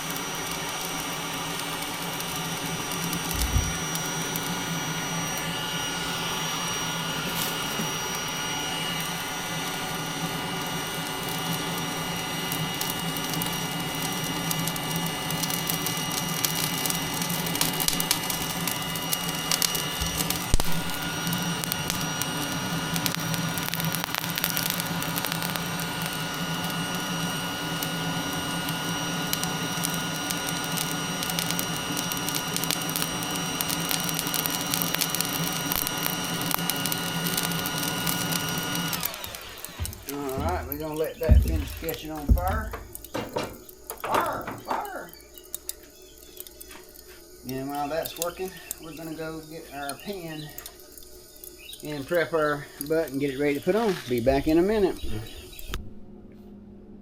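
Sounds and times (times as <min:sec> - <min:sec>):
charcoal crackling: 0:00.0 - 0:55.8
fan whine: 0:00.0 - 0:57.0
thump: 0:39.8 - 0:44.8.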